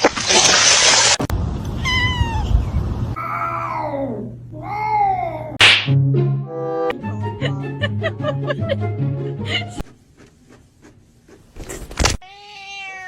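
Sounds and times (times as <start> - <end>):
cat meowing: 1.8 - 5.6, 12.2 - 13.0.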